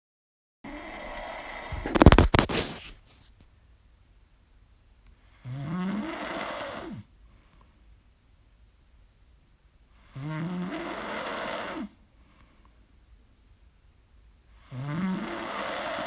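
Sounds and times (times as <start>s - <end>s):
person snoring loudly: 0.7s - 2.8s, 5.4s - 7.1s, 10.0s - 12.0s, 14.6s - 16.0s.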